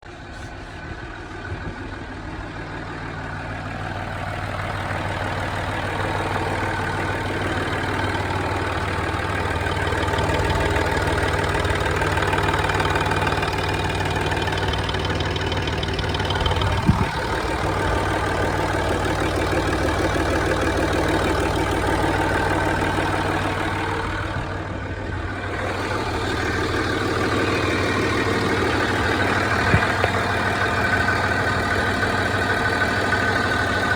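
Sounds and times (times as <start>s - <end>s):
diesel engine idling: 0.0s - 33.9s
loud ticking clacking: 3.8s - 33.9s
sharp engine knock: 27.8s - 32.4s.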